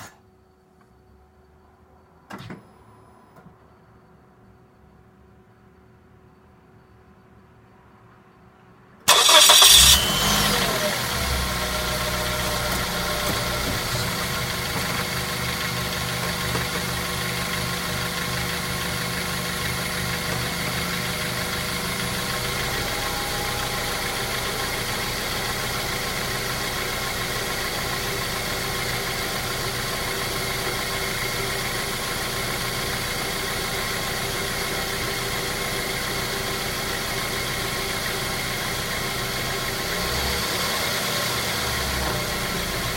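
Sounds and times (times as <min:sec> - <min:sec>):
car engine starting and idling: 0:09.0 - 0:42.9.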